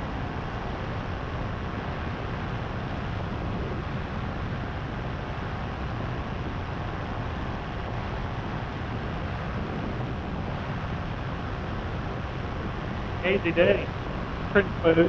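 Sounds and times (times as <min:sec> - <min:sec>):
paramotor engine droning: 0:00.0 - 0:15.0
wind rushing over microphone: 0:00.0 - 0:15.0.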